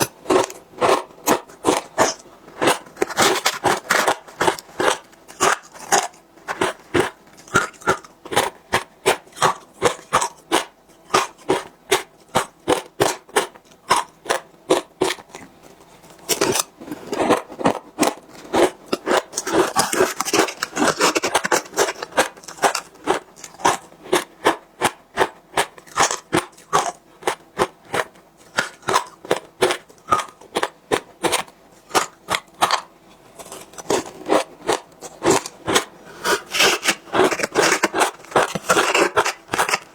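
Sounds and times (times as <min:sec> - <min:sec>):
crunching frozen ice: 0:00.0 - 0:11.7, 0:16.2 - 0:24.6, 0:25.2 - 0:39.9.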